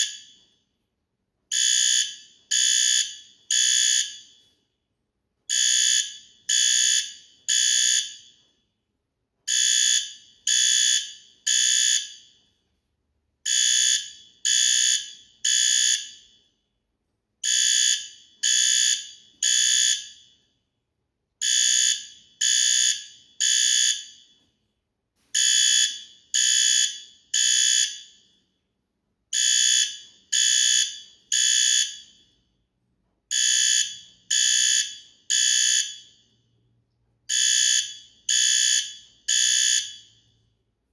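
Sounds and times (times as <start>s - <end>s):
fire alarm horn blasts: 0.0s - 0.6s, 1.5s - 4.6s, 5.5s - 8.6s, 9.5s - 12.6s, 13.5s - 16.6s, 17.4s - 20.6s, 21.4s - 24.5s, 25.4s - 28.4s, 29.3s - 32.4s, 33.3s - 36.4s, 37.3s - 40.4s.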